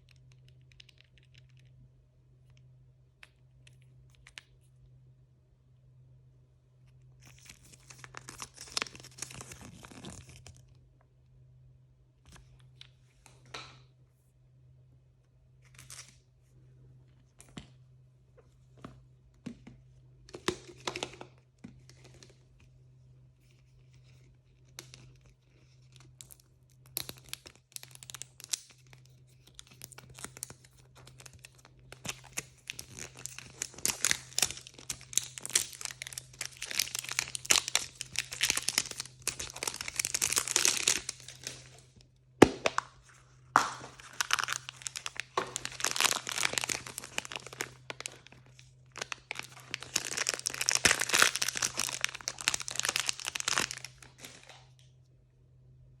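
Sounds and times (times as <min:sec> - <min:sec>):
plastic packaging crinkling: 0:07.2 - 0:10.6, 0:25.9 - 0:54.7.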